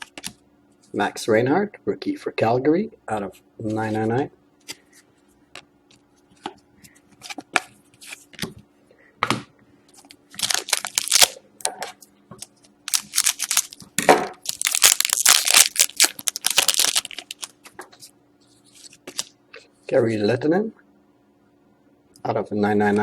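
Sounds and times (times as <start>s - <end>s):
wrapper tearing and crinkling: 10.3s - 11.4s, 12.9s - 13.8s, 14.4s - 17.7s.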